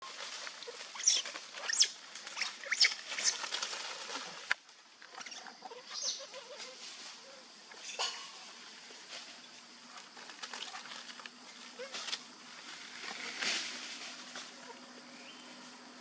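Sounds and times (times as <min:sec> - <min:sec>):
baby monkey squeaking: 0:00.9 - 0:03.4.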